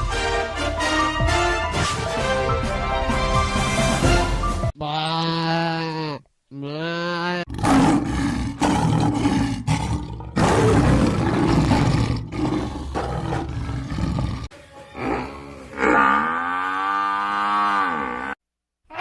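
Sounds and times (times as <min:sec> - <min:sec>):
loud rough animal roars: 0:07.5 - 0:18.4
moo-like animal call: 0:15.0 - 0:19.0.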